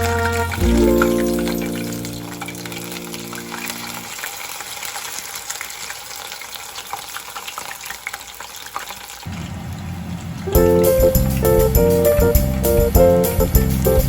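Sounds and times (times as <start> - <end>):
oil crackling and popping: 0.0 - 10.6
hot oil sizzling: 0.0 - 14.0.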